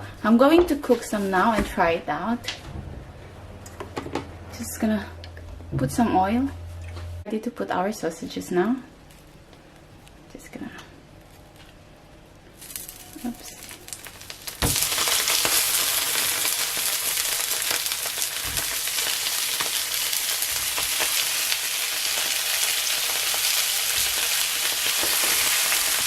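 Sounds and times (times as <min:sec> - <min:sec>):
sausages sizzling in oil: 0:12.5 - 0:26.0.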